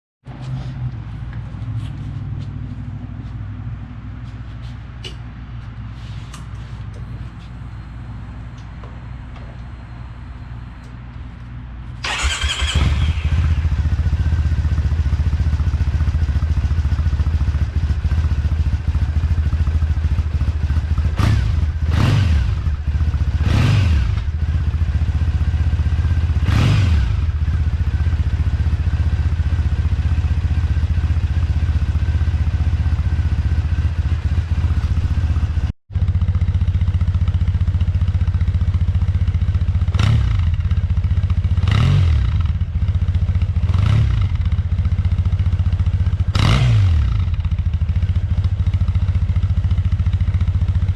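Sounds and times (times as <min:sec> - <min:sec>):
motorcycle engine idling: 0:12.0 - 0:23.5, 0:27.1 - 0:46.4, 0:47.1 - 0:50.9.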